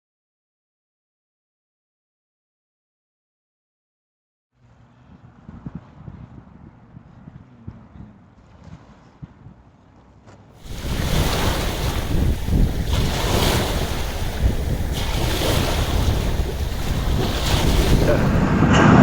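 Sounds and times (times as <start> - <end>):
wind buffeting microphone: 10.6 - 19.0.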